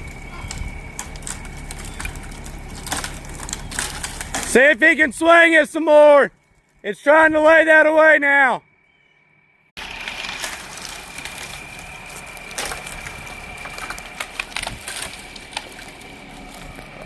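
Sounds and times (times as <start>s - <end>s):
branches snapping and crashing: 0.0s - 4.8s, 9.8s - 17.0s
tree wood cracking: 0.0s - 5.4s, 6.3s - 6.9s, 9.8s - 17.0s.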